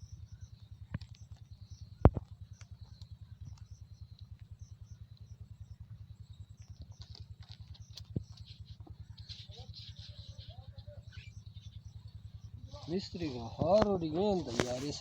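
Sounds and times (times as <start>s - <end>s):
engine running: 0.0s - 15.0s.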